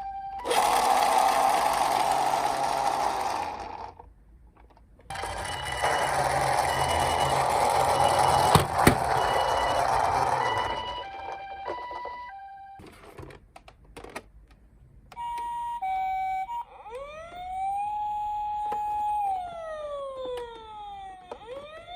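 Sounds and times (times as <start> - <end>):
toy car mechanism whirring: 0.4 - 4.1, 5.1 - 12.3.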